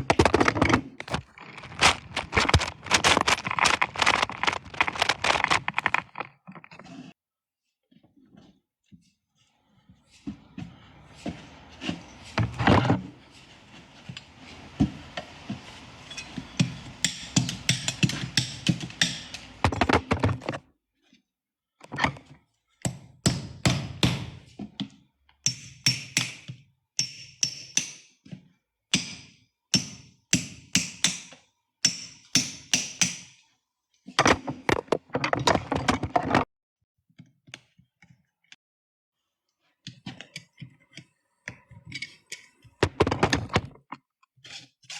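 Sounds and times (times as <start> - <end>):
scraping of hoof: 0.0 - 7.2, 9.6 - 20.6
sharp knocks and cutting strokes: 15.6 - 19.8.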